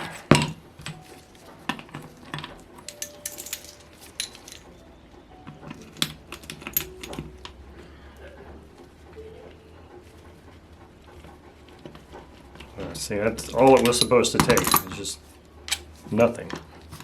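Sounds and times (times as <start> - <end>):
metallic clicks of tools and parts: 1.7 - 4.7.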